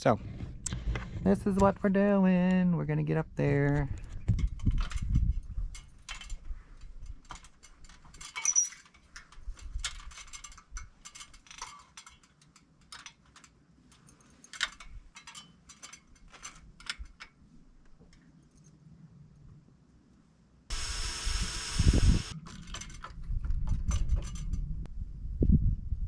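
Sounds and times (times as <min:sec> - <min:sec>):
metallic clinks from ladder: 0:04.4 - 0:17.3, 0:22.5 - 0:24.7.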